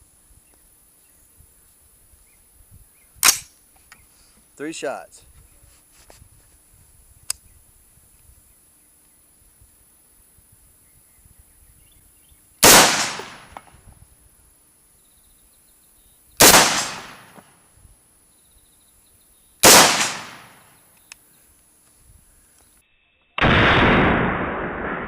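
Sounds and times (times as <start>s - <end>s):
rifle shots with echo: 12.6s - 13.6s, 16.4s - 17.4s, 19.6s - 20.7s, 23.4s - 25.0s.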